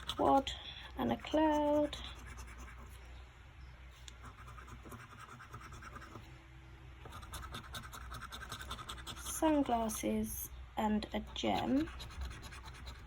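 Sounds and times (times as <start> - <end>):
scratchcard being scratched: 0.0 - 2.9, 4.2 - 6.2, 7.1 - 10.0, 11.2 - 13.0.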